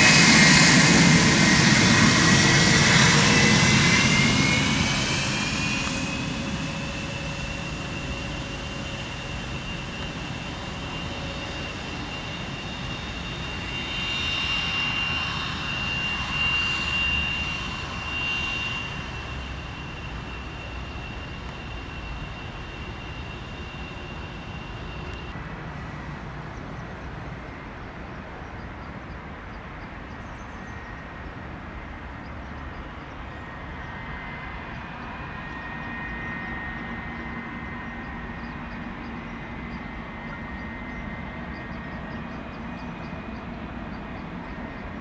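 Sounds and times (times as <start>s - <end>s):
jet engines whining: 0.0s - 25.4s, 31.2s - 45.0s.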